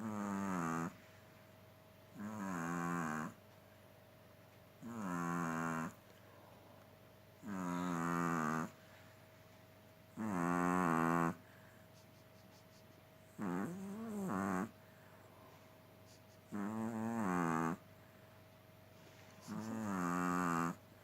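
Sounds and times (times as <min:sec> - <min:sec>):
small dog snoring: 0:00.0 - 0:01.0, 0:02.1 - 0:03.4, 0:04.8 - 0:06.0, 0:07.4 - 0:08.8, 0:10.1 - 0:11.4, 0:13.3 - 0:14.8, 0:16.1 - 0:17.8, 0:19.1 - 0:20.8.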